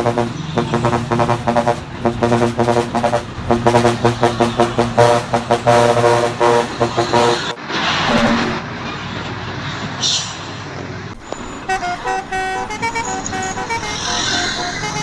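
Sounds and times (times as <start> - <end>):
musical air horn toots: 0.0 - 7.6
steady low hum: 0.0 - 7.6.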